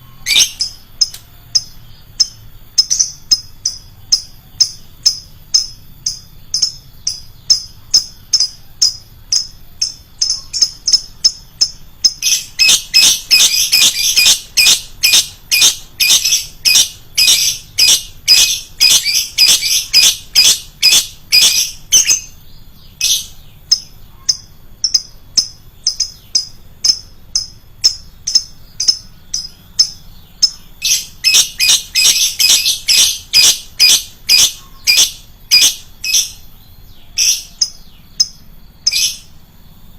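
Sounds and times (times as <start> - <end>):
lovebird chirping: 0.0 - 39.9.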